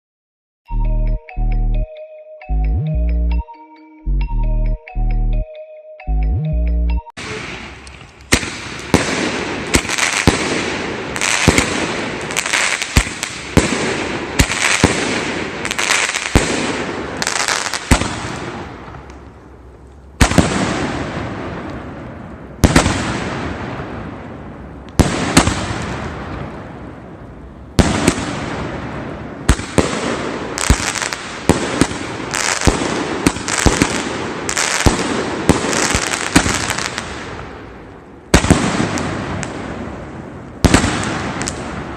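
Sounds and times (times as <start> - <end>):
fireworks shots and bursts: 7.2 - 18.9, 20.2 - 22.0, 22.6 - 27.0, 27.7 - 41.9.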